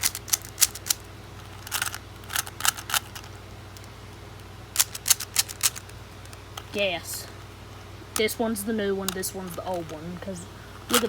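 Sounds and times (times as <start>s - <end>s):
puzzle cube clicking: 0.0s - 3.9s, 4.8s - 5.9s.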